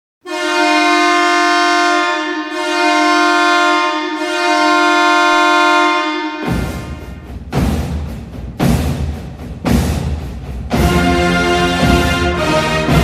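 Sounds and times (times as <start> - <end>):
hockey goal horn blast: 0.2 - 7.2
goal music: 10.7 - 13.0.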